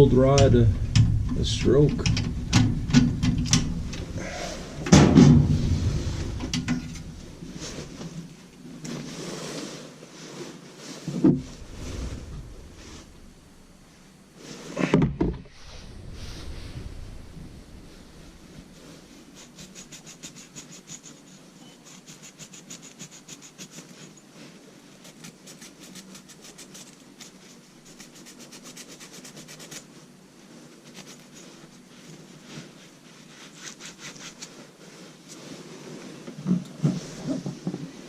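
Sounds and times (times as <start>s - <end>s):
knocks: 2.0s - 4.1s, 4.8s - 7.0s
rubbing strokes on metal rod: 18.2s - 36.0s.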